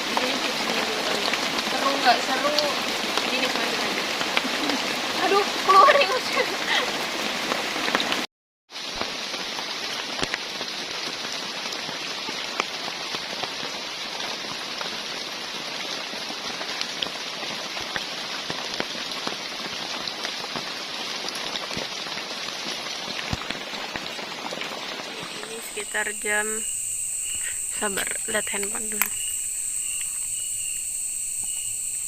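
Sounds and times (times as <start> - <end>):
heavy rain falling: 0.0 - 29.7
drops ticking: 25.2 - 32.0.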